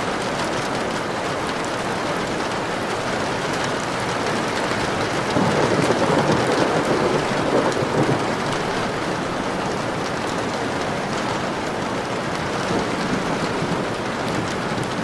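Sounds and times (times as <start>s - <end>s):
steady rain falling: 0.0s - 15.0s
low rumble of thunder: 5.2s - 9.9s, 12.6s - 15.0s.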